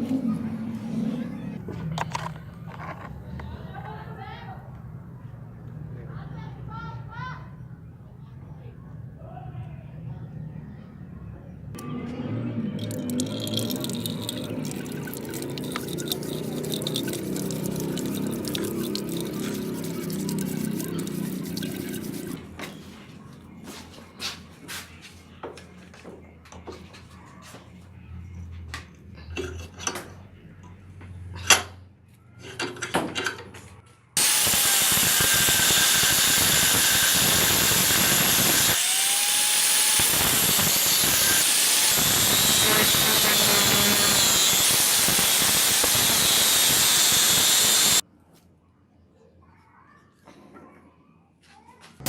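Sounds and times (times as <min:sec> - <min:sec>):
power tool on rusty metal: 0:12.9 - 0:22.4, 0:34.2 - 0:48.0
tools clicking and knocking: 0:29.3 - 0:30.8.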